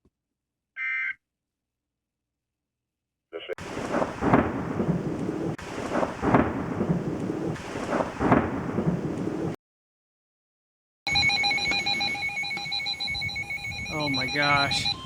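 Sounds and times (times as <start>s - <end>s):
rain: 3.6s - 9.6s
thunder rumbling: 3.6s - 9.6s.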